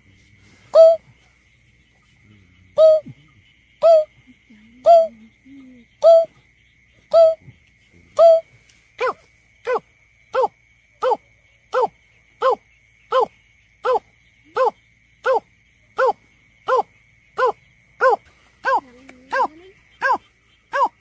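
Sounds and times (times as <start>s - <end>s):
bird hooting calls: 0.7s - 1.1s, 2.7s - 3.2s, 3.8s - 4.1s, 4.8s - 5.2s, 6.0s - 6.3s, 7.1s - 7.4s, 8.2s - 8.4s, 16.0s - 21.0s.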